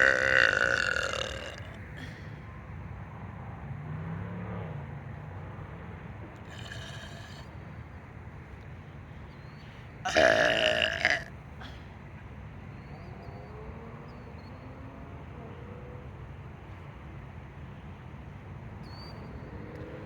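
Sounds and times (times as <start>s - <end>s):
loud drawn-out burp: 0.0s - 1.8s, 6.5s - 7.4s, 10.1s - 11.3s.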